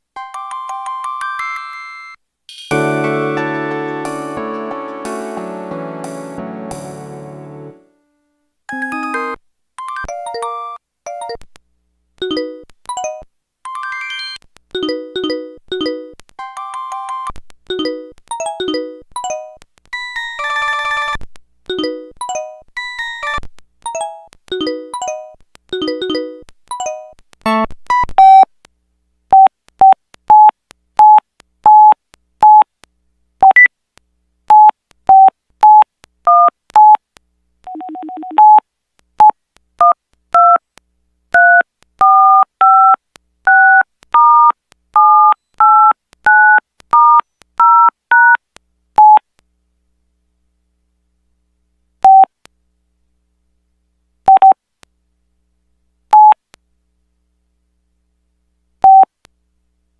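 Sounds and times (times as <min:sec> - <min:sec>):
phone keypad beeps: 0:29.4 - 0:32.6, 0:37.7 - 0:38.6, 0:49.0 - 0:49.2, 0:52.1 - 0:52.3, 0:54.3 - 0:54.6, 0:56.2 - 0:56.4, 0:58.8 - 0:59.1
touch-tone beeps: 0:37.7 - 0:38.6.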